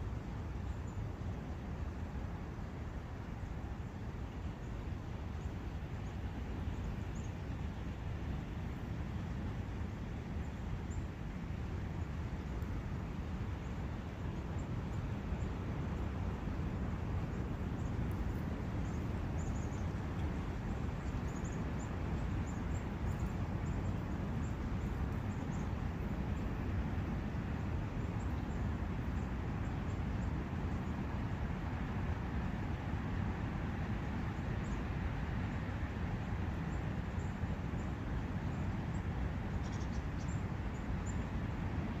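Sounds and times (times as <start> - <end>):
faint bird chirps: 18.8 - 20.2, 39.5 - 41.3.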